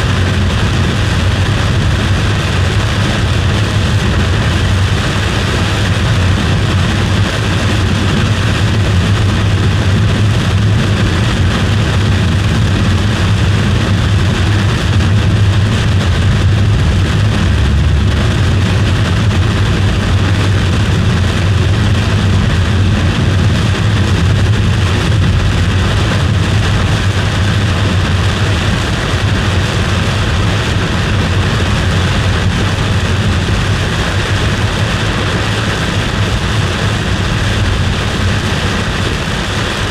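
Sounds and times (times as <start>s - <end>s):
vehicle engine and road rumble: 0.0s - 39.9s.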